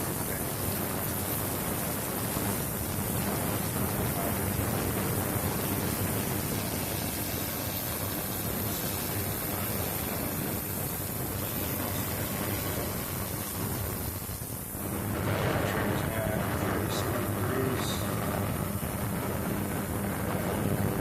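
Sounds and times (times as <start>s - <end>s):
ultrasonic cleaner hissing buzz: 0.0s - 21.0s.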